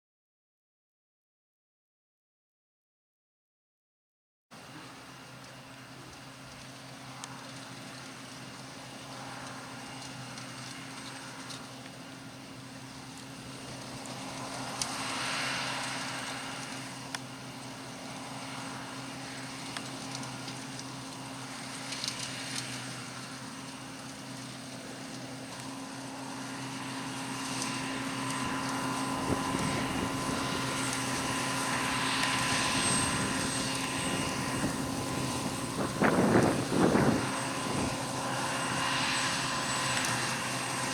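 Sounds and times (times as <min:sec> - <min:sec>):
diesel engine humming: 0:22.0 - 0:40.9.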